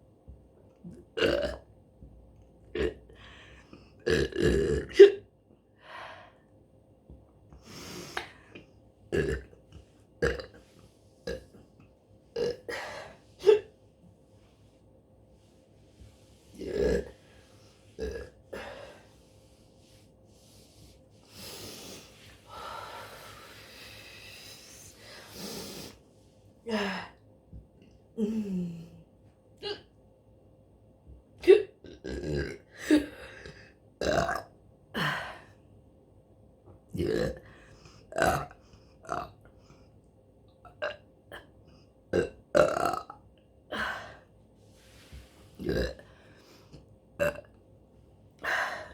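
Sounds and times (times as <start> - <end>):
woman burping: 0.9 - 1.6, 4.0 - 5.3, 9.1 - 9.6, 10.2 - 10.6, 11.3 - 11.5, 12.4 - 13.7, 16.6 - 17.2, 18.0 - 18.9, 29.6 - 30.0, 34.0 - 35.3, 37.0 - 37.5, 40.7 - 41.5, 42.1 - 44.0, 45.6 - 46.1, 47.2 - 47.5
woman breathing noisily: 15.6 - 26.1, 48.4 - 48.9.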